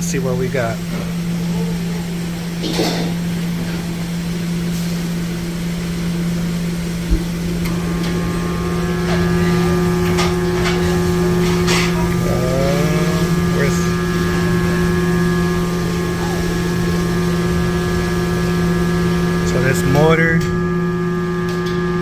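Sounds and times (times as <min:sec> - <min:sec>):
higher multi-tone motor hum: 0:00.0 - 0:22.0
ice machine electrical hum: 0:00.0 - 0:22.0.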